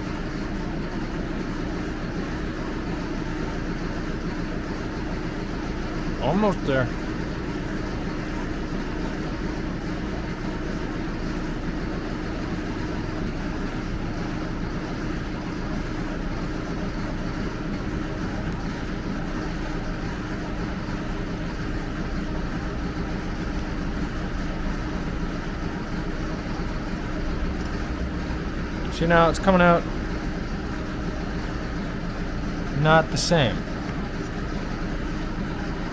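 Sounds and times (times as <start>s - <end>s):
mechanical whir and hum: 0.0s - 35.9s
low drone tones: 23.2s - 32.8s.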